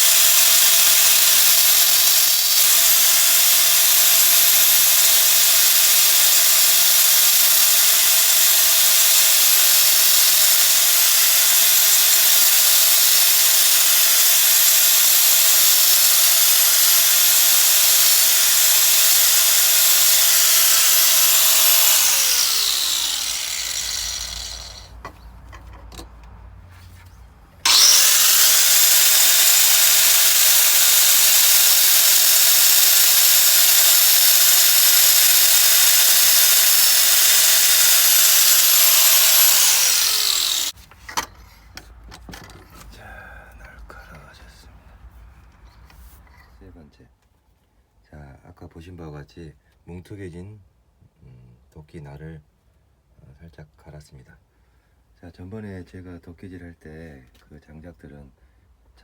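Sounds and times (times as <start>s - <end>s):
electric grinder sharpening blade: 0.0s - 24.9s, 27.7s - 40.8s.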